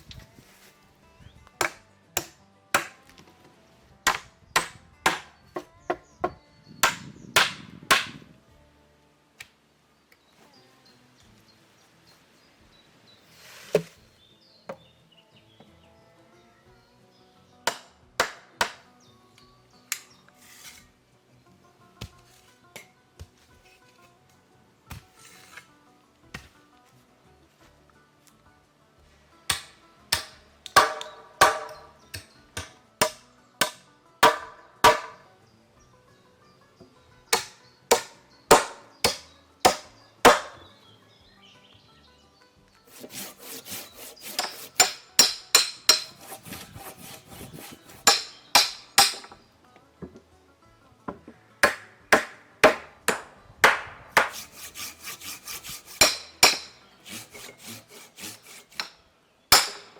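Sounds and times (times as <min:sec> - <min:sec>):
hand tool striking wood: 0:01.6 - 0:03.4, 0:04.0 - 0:08.3, 0:13.7 - 0:14.0, 0:17.7 - 0:18.9, 0:29.5 - 0:35.3, 0:37.3 - 0:40.7, 0:42.9 - 0:49.4, 0:51.1 - 0:59.9
scraping: 0:20.4 - 0:20.9, 0:42.9 - 0:45.2, 0:45.8 - 0:48.4, 0:54.2 - 0:59.0.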